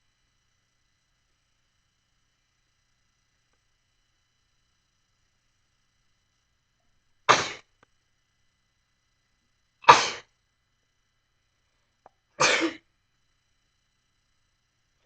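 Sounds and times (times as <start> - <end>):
person sneezing: 7.3 - 7.6, 9.8 - 10.3, 12.4 - 12.8.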